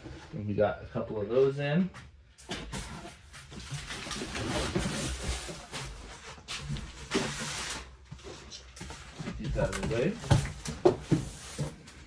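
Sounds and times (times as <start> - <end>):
cardboard boxes rustling and scraping: 2.4 - 12.0.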